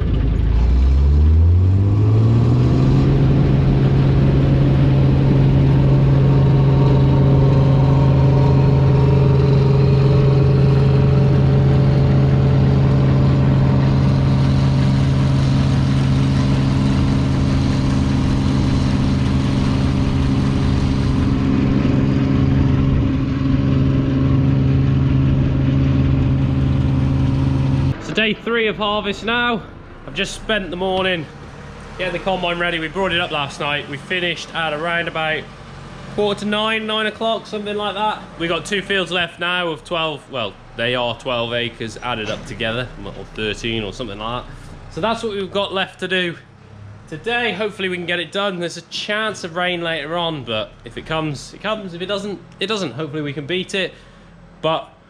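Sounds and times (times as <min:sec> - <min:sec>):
combine harvester engine running: 0:00.0 - 0:54.8.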